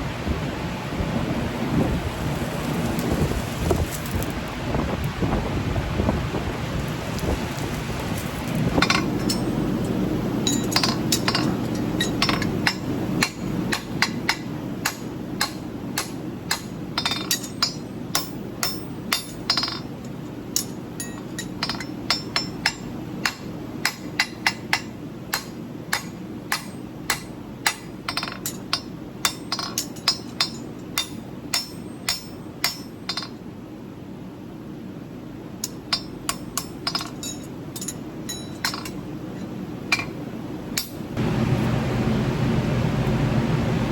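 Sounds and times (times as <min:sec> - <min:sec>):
hammer striking steel horseshoe: 0:08.8 - 0:09.6, 0:10.4 - 0:33.4, 0:35.6 - 0:40.2, 0:40.8 - 0:41.0.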